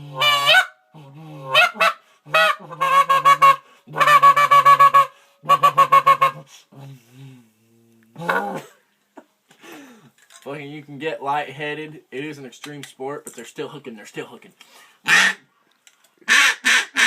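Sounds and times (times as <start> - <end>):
goose call honks: 0.1 - 0.7, 1.5 - 6.4, 15.1 - 15.4, 16.3 - 17.0
goose call clucks: 0.1 - 0.8, 1.4 - 6.5, 15.1 - 15.4, 16.3 - 17.0.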